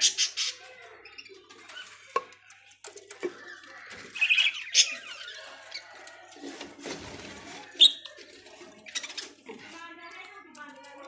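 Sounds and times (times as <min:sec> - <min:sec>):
budgerigars chirping and squawking: 0:00.0 - 0:02.2, 0:03.1 - 0:09.5.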